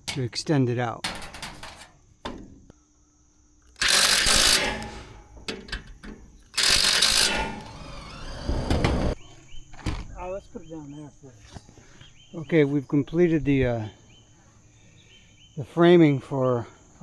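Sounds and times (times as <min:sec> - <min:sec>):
clicks and knocks: 0:01.0 - 0:02.7, 0:03.8 - 0:09.2
power drill running: 0:03.8 - 0:05.0, 0:06.6 - 0:09.2.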